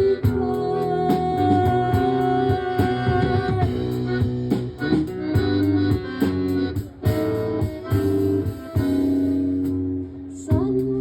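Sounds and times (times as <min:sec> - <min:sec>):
plucked strings instrumental: 0:02.0 - 0:10.3.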